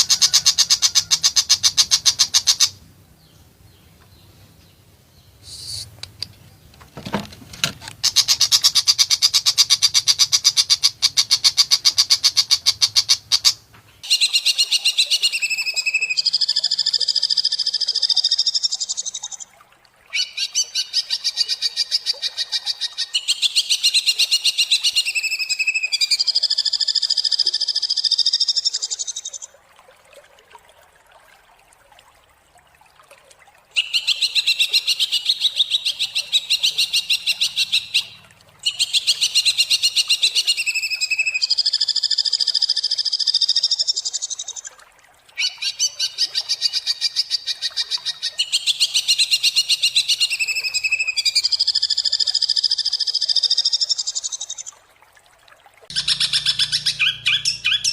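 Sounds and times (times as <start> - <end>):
bird singing harsh rapid notes: 55.9 - 57.9.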